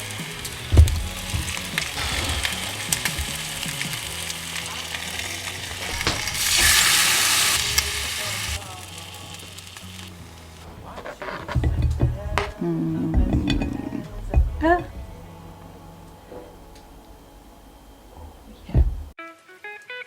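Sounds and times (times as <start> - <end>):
food sizzling in a frying pan: 0.0 - 12.2.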